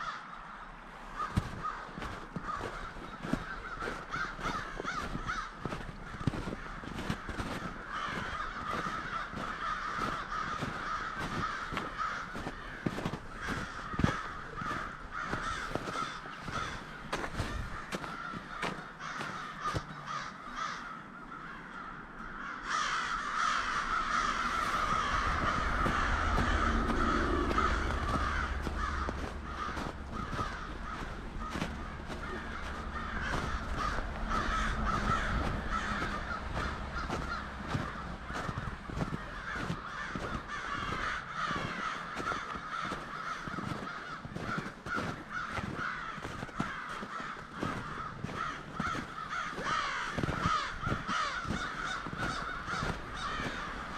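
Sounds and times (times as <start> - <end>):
crows cawing: 0.0 - 53.9.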